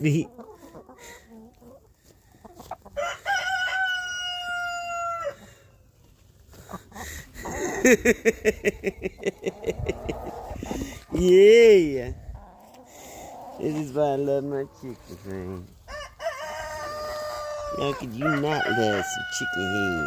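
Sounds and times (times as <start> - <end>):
chicken clucking: 0.0 - 11.3, 12.0 - 20.0
rooster crowing: 3.0 - 5.4, 15.9 - 20.0.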